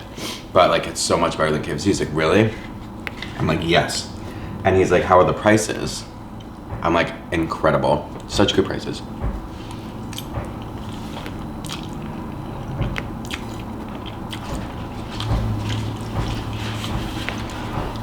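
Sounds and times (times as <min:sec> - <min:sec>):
low steady hum: 0:00.0 - 0:18.0
person biting and chewing food: 0:09.6 - 0:18.0
food crunching: 0:09.7 - 0:18.0
wet mouth clicks: 0:11.2 - 0:12.1.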